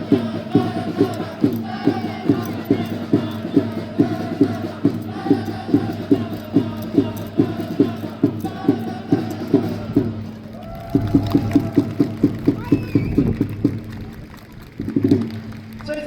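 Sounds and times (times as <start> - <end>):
crowd chanting in unison: 0.0 - 12.4
steady drum beat: 0.0 - 15.5.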